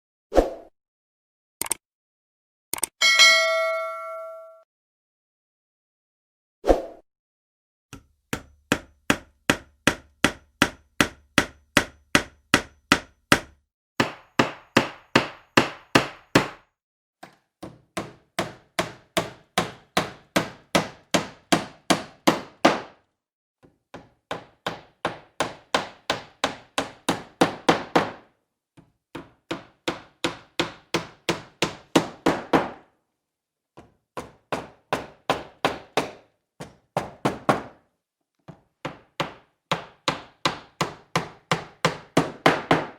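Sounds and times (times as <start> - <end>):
hammer striking: 3.0 - 4.6, 7.9 - 16.6.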